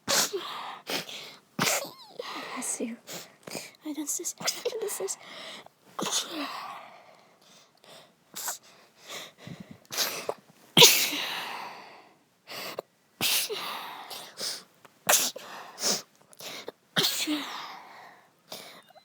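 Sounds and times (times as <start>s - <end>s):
woman sneezing: 1.6s - 2.8s, 4.2s - 5.2s, 6.0s - 6.6s, 10.0s - 11.4s, 17.0s - 17.6s
short breaths: 5.2s - 5.7s, 6.4s - 10.4s.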